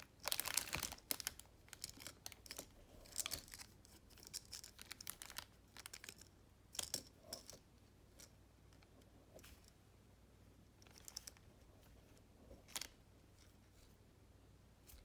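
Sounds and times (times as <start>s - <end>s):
packaging crinkling and rustling: 0.2s - 3.7s.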